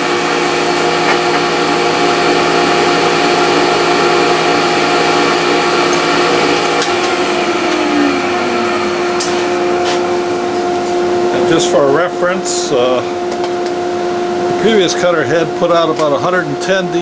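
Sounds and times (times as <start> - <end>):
thickness planer planing wood: 0.0 - 11.5.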